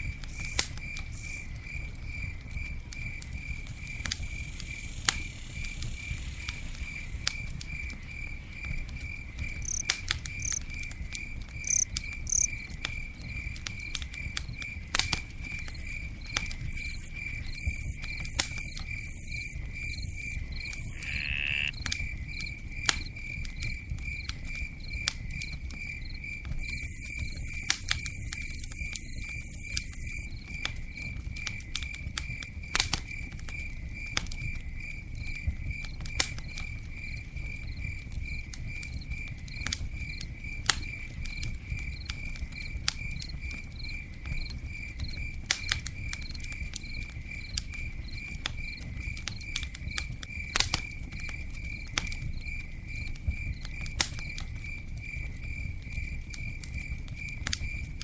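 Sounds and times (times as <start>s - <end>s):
campfire crackling and popping: 0.0s - 58.0s
insect chirping: 3.4s - 8.4s, 9.5s - 10.9s, 11.6s - 12.6s, 15.5s - 22.5s, 25.9s - 30.4s.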